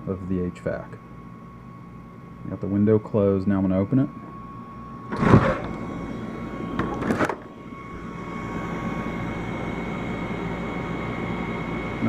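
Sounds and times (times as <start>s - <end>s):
steady mechanical hum: 0.0s - 12.0s
window sliding open: 5.1s - 5.9s.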